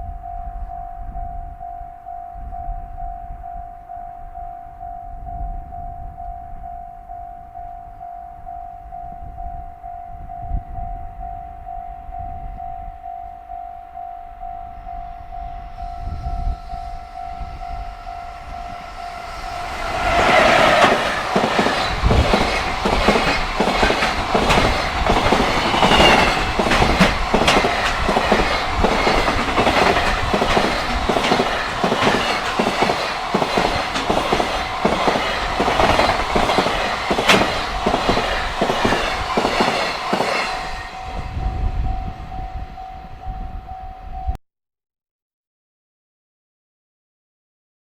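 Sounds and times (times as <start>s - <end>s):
train wheels clacking over rail joints: 19.7s - 41.0s.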